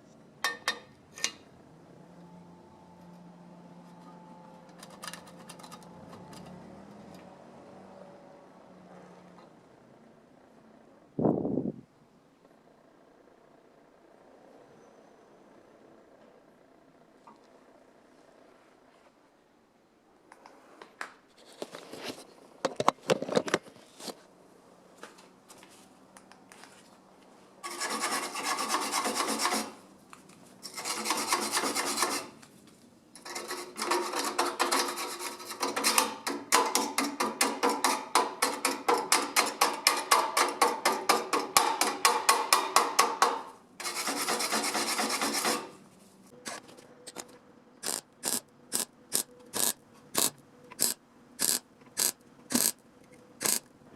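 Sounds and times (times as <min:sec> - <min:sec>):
hand tool rasping on hard surface: 0:27.6 - 0:29.8, 0:30.6 - 0:32.4, 0:33.2 - 0:42.0, 0:42.8 - 0:45.8.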